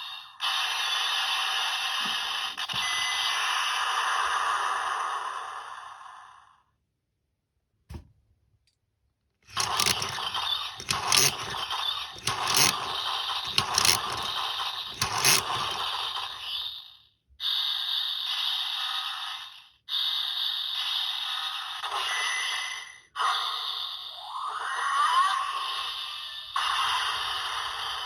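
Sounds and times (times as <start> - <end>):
toy click: 9.5 - 16.5.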